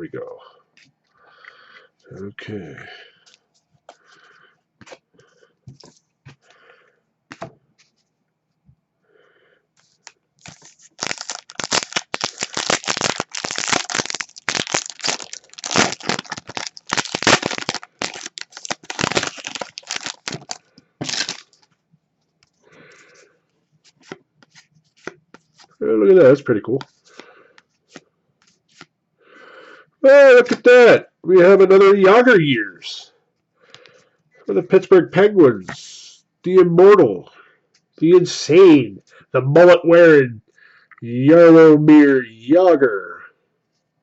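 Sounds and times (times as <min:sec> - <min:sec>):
wrapper tearing and crinkling: 0:10.4 - 0:21.7.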